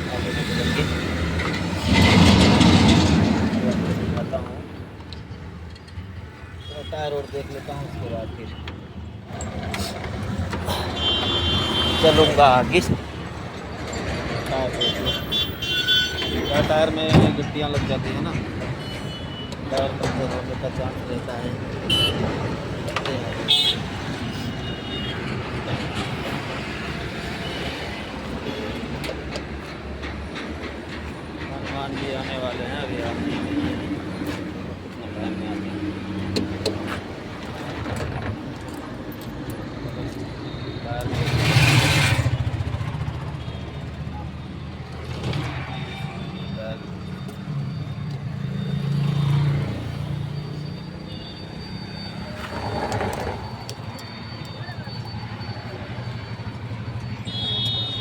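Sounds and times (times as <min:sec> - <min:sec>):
heavy road traffic rumble: 0:00.0 - 0:58.0
heavy vehicle engine humming: 0:40.2 - 0:58.0.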